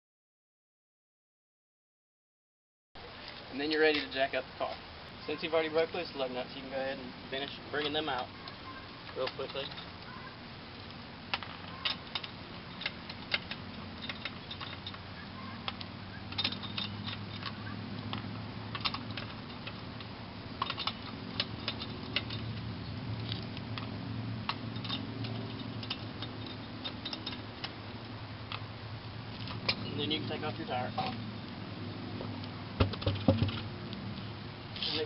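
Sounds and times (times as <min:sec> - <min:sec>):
lug nuts clinking: 0:11.3 - 0:27.8.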